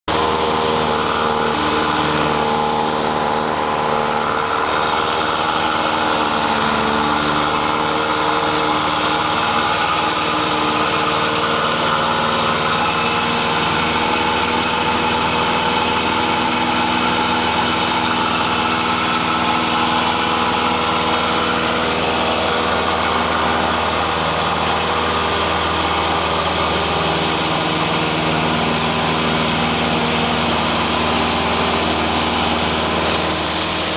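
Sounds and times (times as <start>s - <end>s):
light aircraft engine and propeller: 0.1s - 33.9s.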